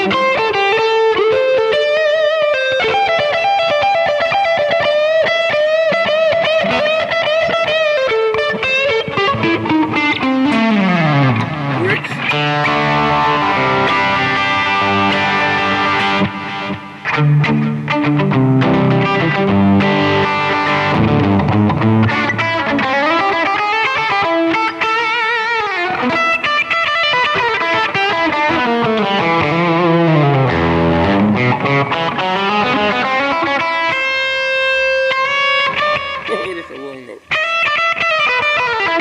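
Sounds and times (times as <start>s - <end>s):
electric guitar through amplifier: 0.0s - 39.0s.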